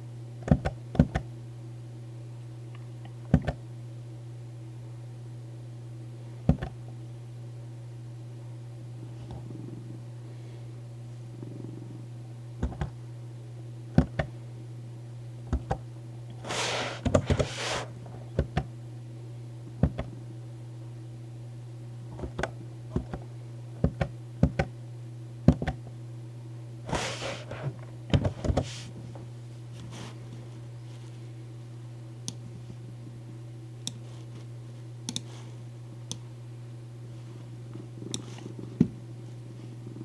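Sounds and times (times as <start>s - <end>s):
cat purring: 9.3s - 10.0s, 11.3s - 12.1s, 37.7s - 38.8s, 39.5s - 40.0s.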